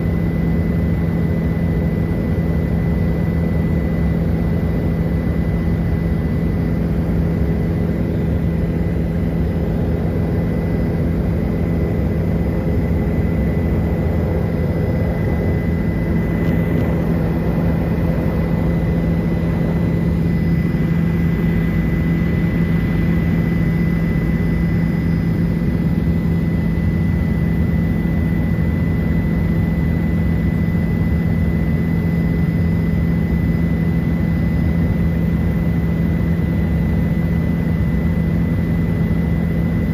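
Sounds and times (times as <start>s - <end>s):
helicopter in flight: 0.0s - 39.9s.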